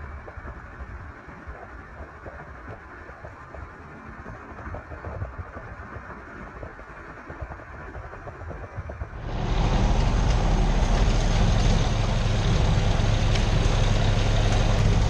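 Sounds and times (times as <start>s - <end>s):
tractor engine rumbling: 9.0s - 15.0s.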